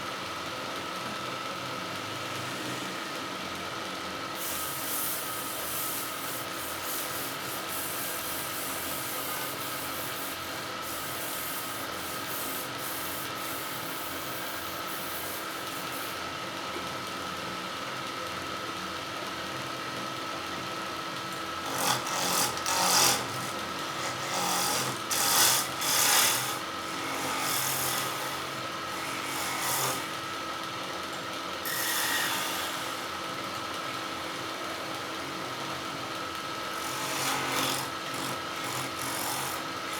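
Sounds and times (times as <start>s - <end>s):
tool scraping spinning wood: 4.4s - 16.2s, 21.4s - 30.4s, 31.6s - 33.2s, 36.6s - 39.9s
wood lathe motor humming: 4.4s - 16.3s, 21.3s - 39.9s.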